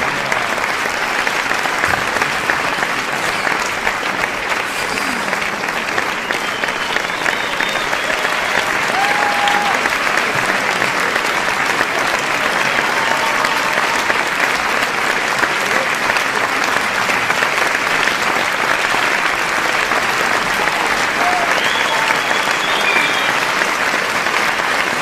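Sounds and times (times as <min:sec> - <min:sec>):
large audience applauding: 0:00.0 - 0:25.0
crowd shouts: 0:06.8 - 0:10.0, 0:12.4 - 0:14.4, 0:20.7 - 0:23.3.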